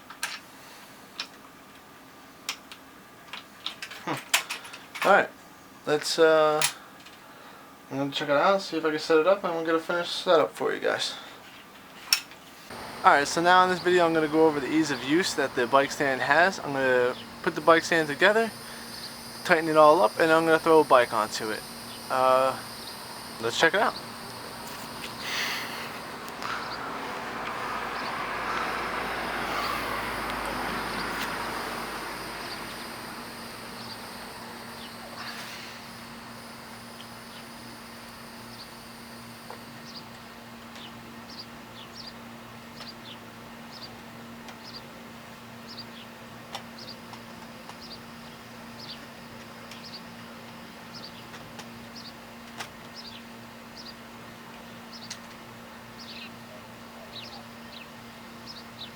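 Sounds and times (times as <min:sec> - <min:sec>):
vehicle passing: 0:12.7 - 0:35.9
steady low hum: 0:12.7 - 0:40.4.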